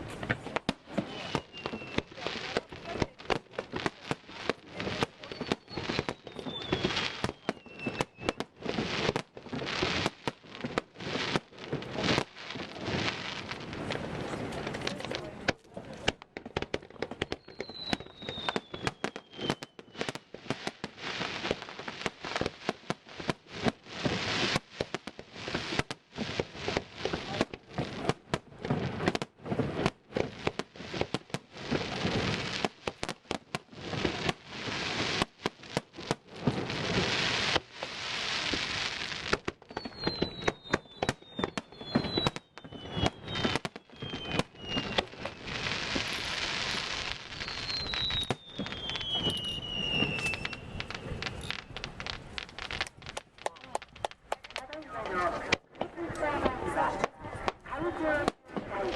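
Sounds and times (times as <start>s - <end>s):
falling firework whistles: 0.0s - 2.7s, 4.4s - 10.2s, 17.1s - 23.3s, 36.4s - 53.2s
firework bangs: 0.0s - 58.9s
firework crackling: 0.0s - 58.9s.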